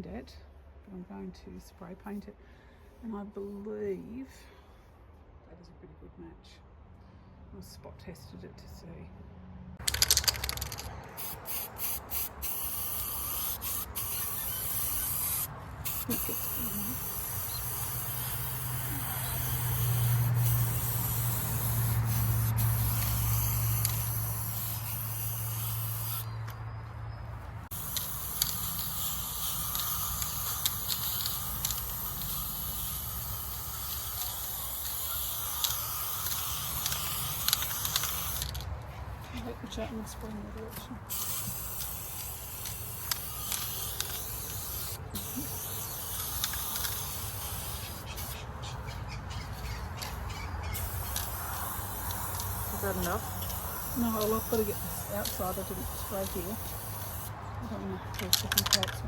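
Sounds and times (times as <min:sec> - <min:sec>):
spray paint can hissing: 0:09.8 - 0:26.4, 0:27.6 - 0:38.7, 0:40.2 - 0:59.0.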